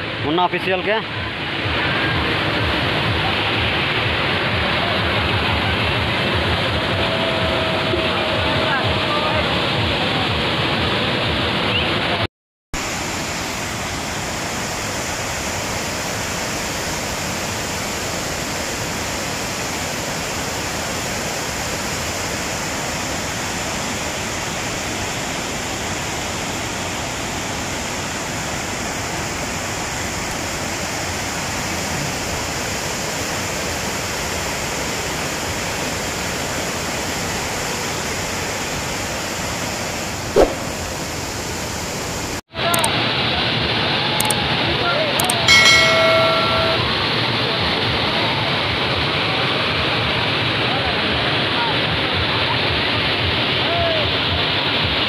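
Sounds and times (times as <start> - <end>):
waterfall roaring: 0.0 - 55.0
sharp pitched sound: 40.3 - 41.4.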